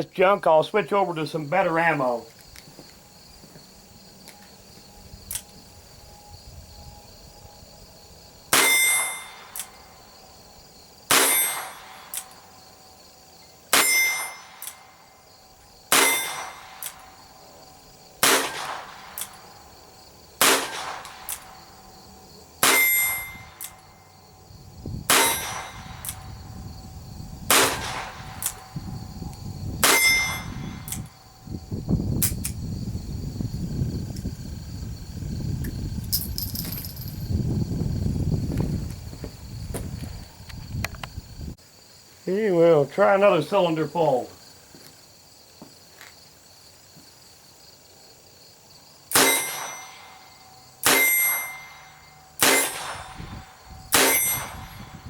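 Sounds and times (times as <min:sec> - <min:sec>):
gun handling noise: 0:36.1 - 0:37.2.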